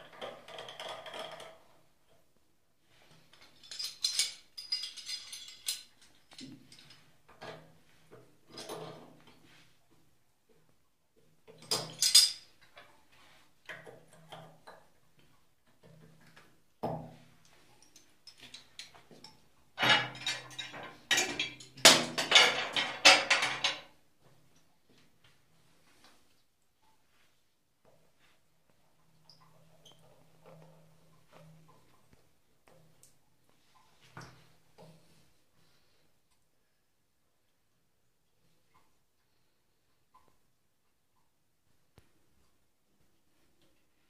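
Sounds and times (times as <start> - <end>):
metal parts clinking and rattling: 3.4 - 7.0, 11.6 - 12.5, 19.8 - 23.9.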